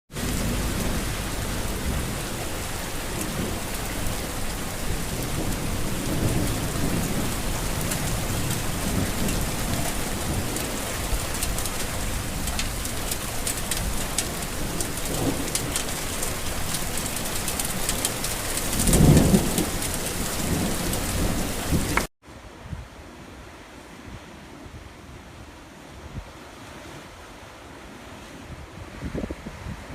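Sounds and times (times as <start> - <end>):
thunder rumbling: 0.1 - 22.1
heavy rain: 0.1 - 24.6.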